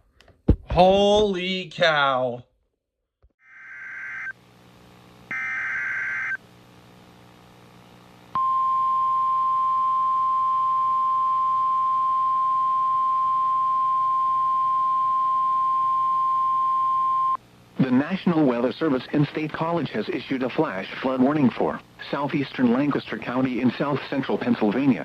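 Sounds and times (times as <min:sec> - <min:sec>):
buzzy digital data chirps: 0:05.3 - 0:06.4
steady warning alarm tone: 0:05.3 - 0:06.4.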